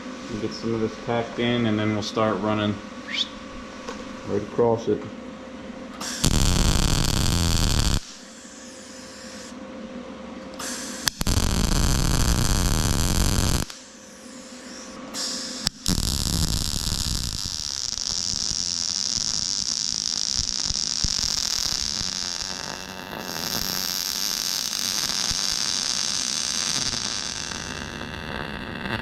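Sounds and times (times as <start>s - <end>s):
welder arc crackling and hissing: 6.0s - 9.6s, 10.4s - 29.0s.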